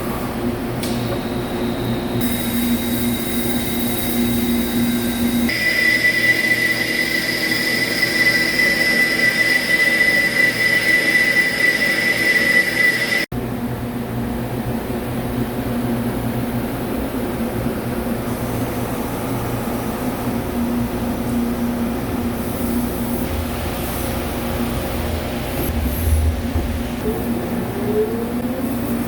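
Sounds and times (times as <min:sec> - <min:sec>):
machine hum: 0:00.0 - 0:29.0
high-pitched cutting whine: 0:01.2 - 0:13.3.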